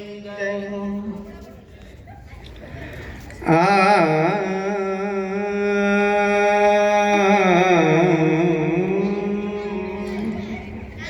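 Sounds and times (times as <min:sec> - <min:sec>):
person singing a long note: 0:03.4 - 0:11.0.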